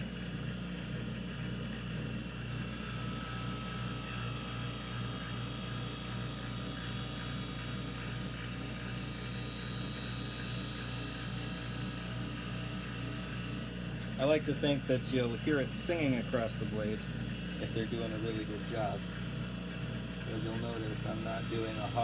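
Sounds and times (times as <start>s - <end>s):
grinding wheel humming: 2.4s - 13.8s, 15.1s - 22.0s
high hiss of blade grinding: 2.5s - 13.7s, 21.0s - 22.0s.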